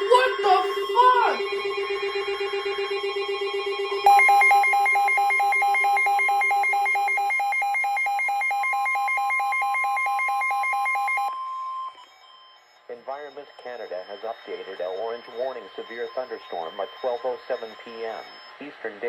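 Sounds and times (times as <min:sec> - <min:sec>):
steady high alert tone: 0:00.0 - 0:01.5
two-pitch warbling beep: 0:00.0 - 0:01.5.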